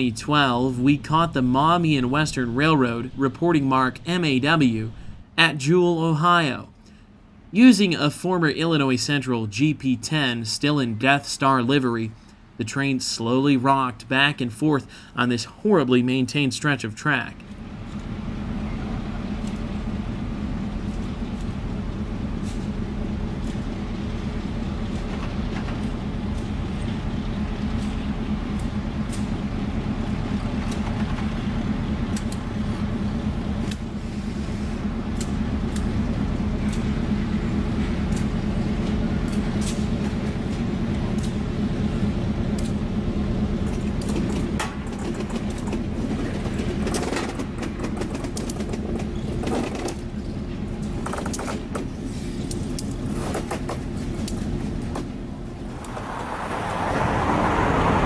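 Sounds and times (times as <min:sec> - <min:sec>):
diesel locomotive engine drone: 0:00.0 - 0:58.0
train clicks and knocks: 0:18.8 - 0:55.2.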